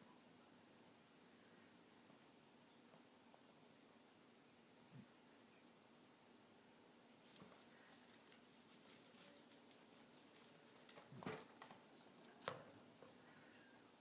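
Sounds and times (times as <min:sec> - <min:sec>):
rabbit crunching hay: 0:07.2 - 0:14.0.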